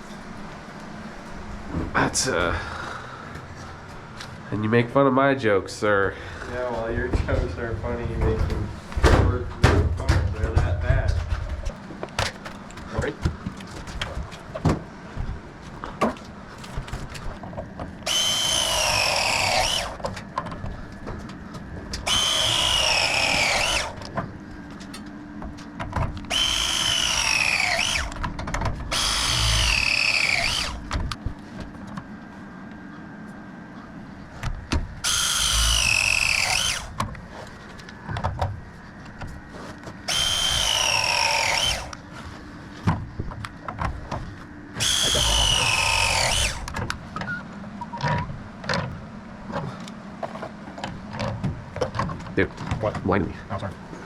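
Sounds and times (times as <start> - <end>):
power tool motor whine: 18.0 - 20.0, 22.0 - 24.1, 26.2 - 31.0, 35.0 - 37.0, 40.1 - 42.0, 44.8 - 46.8.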